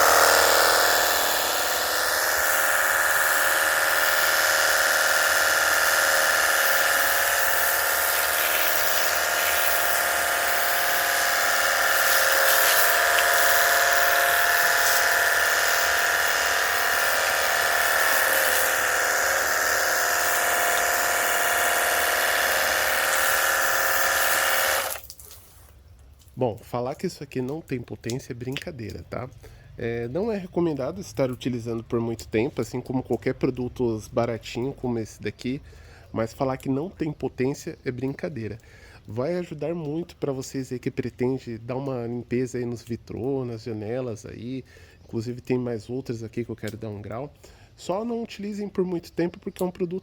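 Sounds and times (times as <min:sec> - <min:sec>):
pressure washer pump whine: 0:00.0 - 0:25.0
water spray hiss: 0:00.0 - 0:25.7.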